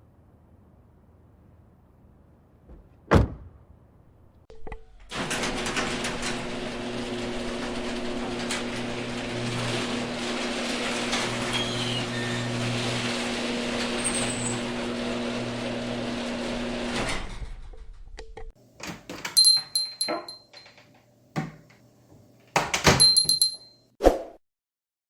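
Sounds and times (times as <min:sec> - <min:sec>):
low thud: 0:02.7 - 0:03.7.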